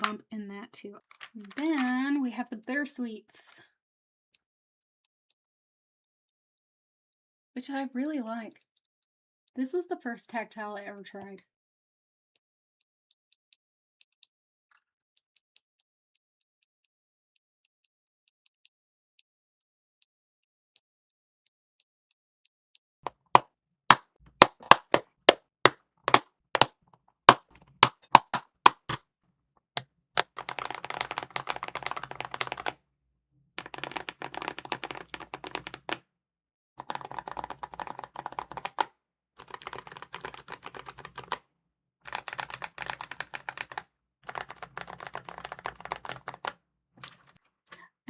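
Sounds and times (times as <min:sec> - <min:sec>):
mechanical keyboard typing: 0:01.1 - 0:01.9, 0:24.4 - 0:25.0, 0:26.1 - 0:26.7, 0:27.8 - 0:29.0, 0:30.2 - 0:32.8, 0:33.6 - 0:36.0, 0:36.8 - 0:41.4, 0:42.1 - 0:46.6.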